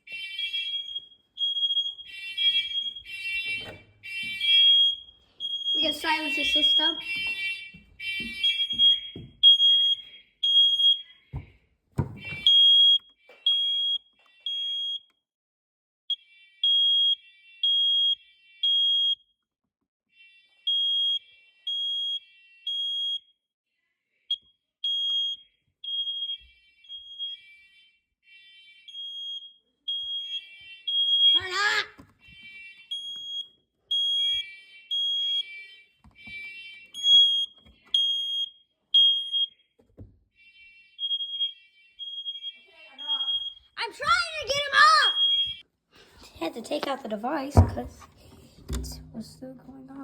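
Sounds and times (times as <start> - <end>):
smoke alarm beeping: 0.0 - 15.1, 16.1 - 19.2, 20.3 - 23.3, 24.3 - 39.8, 40.4 - 45.7
thumps: 11.4 - 12.5, 47.5 - 49.9.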